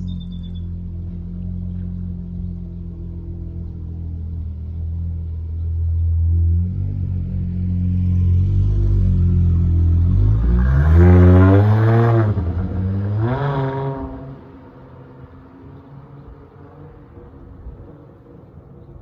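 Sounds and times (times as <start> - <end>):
engine revving: 6.0 - 14.5.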